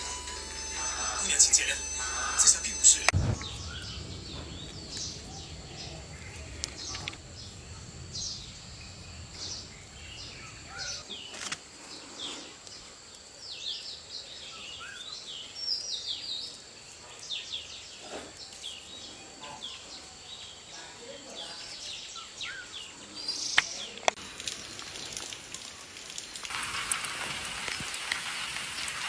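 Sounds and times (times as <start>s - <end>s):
wild birds chirping: 0.0s - 16.6s, 17.2s - 24.0s
low rumble: 1.8s - 11.0s.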